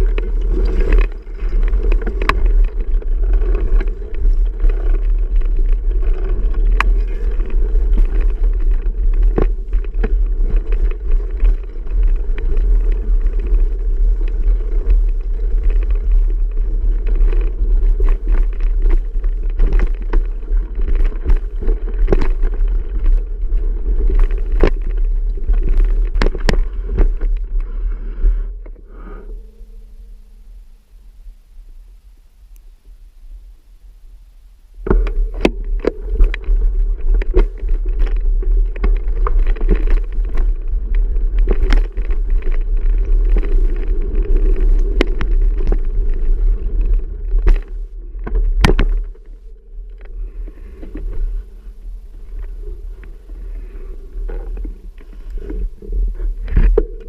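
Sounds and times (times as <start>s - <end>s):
bicycle clicks and rattles: 0.0s - 27.8s, 34.9s - 49.3s
wind and road rumble: 0.0s - 57.0s.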